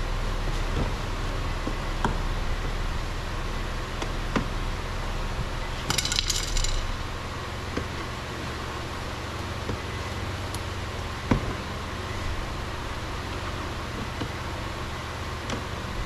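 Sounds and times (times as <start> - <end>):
steady low hum: 0.0 - 16.0
metallic jingle: 5.9 - 7.2.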